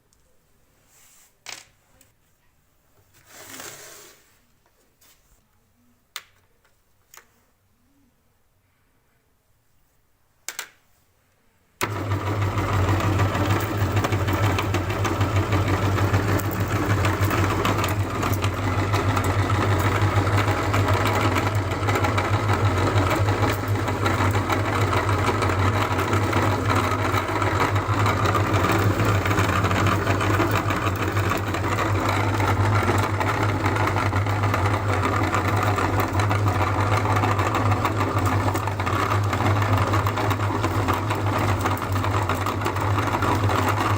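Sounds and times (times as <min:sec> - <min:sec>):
electric meat grinder running: 0:11.8 - 0:43.9.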